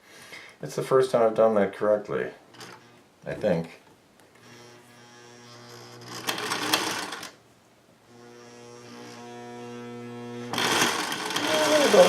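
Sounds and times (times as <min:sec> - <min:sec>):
sewing machine stitching: 0:05.7 - 0:07.4, 0:10.5 - 0:12.0.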